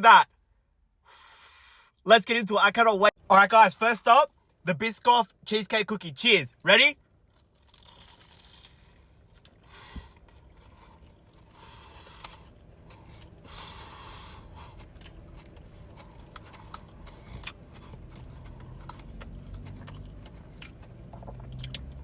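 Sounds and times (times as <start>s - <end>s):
crunchy chewing: 7.3s - 22.0s.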